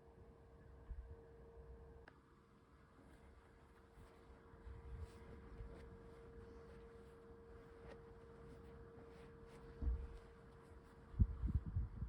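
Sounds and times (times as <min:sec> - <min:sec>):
faint steady hum: 0:00.0 - 0:12.0
faint low rumble: 0:04.6 - 0:12.0.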